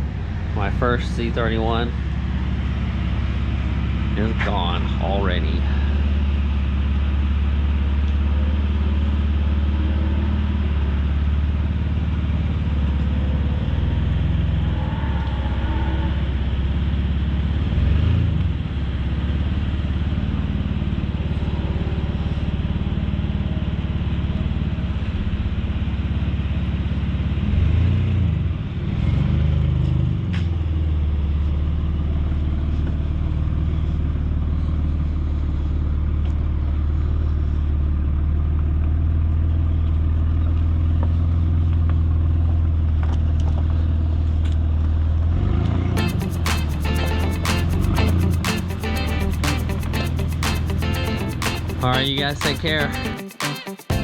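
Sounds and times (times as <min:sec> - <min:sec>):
car engine running: 0:00.0 - 0:14.8, 0:45.9 - 0:53.1.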